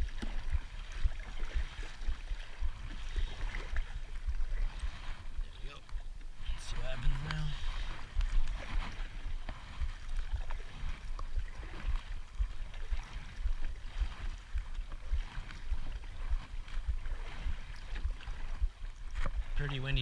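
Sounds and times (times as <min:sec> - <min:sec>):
water lapping against kayak hull: 0:00.0 - 0:20.0
wind buffeting microphone: 0:00.0 - 0:20.0.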